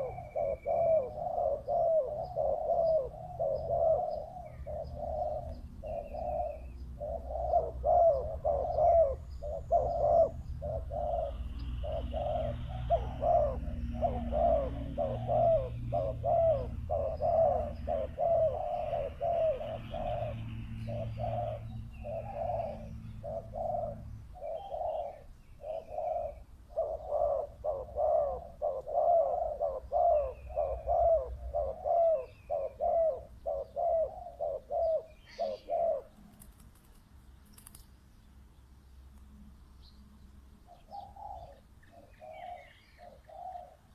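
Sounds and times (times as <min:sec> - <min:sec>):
doves cooing: 0:00.0 - 0:36.8, 0:40.7 - 0:43.9.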